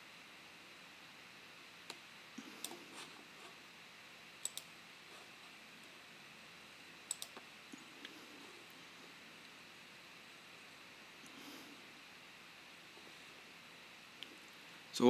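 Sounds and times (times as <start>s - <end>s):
low hiss: 0.0s - 15.0s
computer controls clicking: 4.4s - 4.8s, 7.1s - 7.5s.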